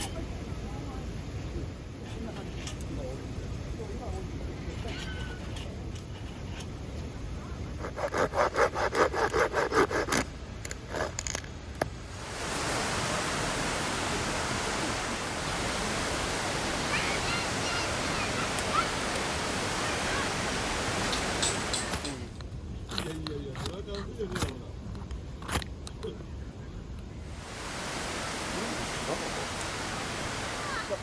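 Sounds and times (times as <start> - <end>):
steady rushing hiss: 5.5 - 24.2, 27.2 - 31.0.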